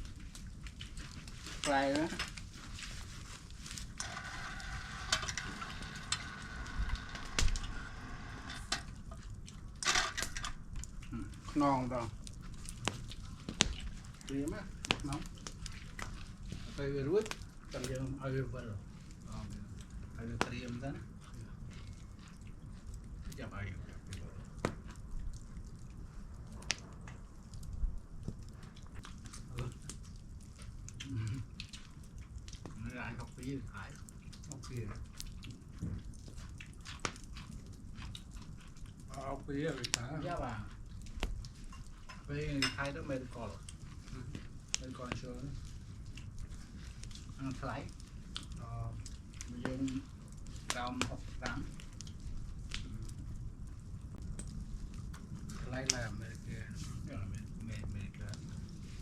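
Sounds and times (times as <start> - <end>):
chewing and biting: 0.0 - 1.6, 8.8 - 9.8, 10.4 - 18.0, 18.8 - 42.3, 43.0 - 59.0
low background rumble: 0.0 - 59.0
food sizzling: 3.9 - 9.2, 41.6 - 45.6.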